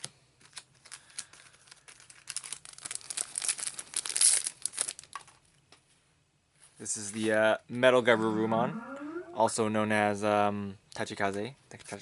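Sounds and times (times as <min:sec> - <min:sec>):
foil wrapper crinkling and tearing: 0:00.4 - 0:05.4.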